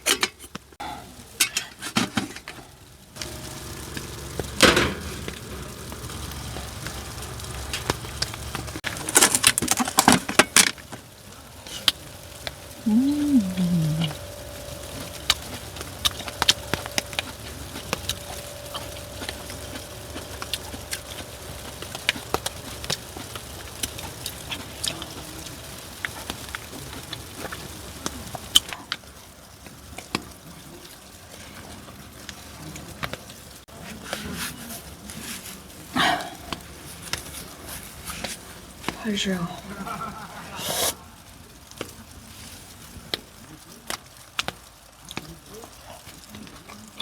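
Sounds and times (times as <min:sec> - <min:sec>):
faint steady hum: 0:02.9 - 0:28.9
raindrops tapping on a tent: 0:03.2 - 0:47.0.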